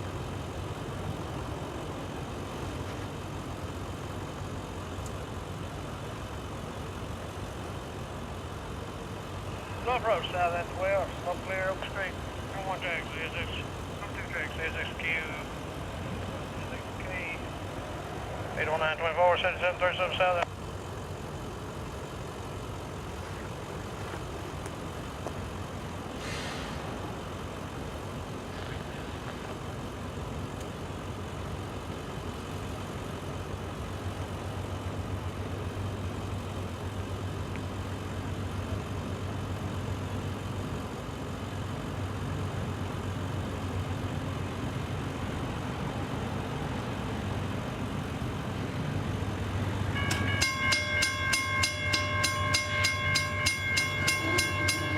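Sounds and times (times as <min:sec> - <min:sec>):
diesel locomotives rumbling: 0:00.0 - 0:54.9
multi-tone locomotive horn: 0:50.0 - 0:54.9.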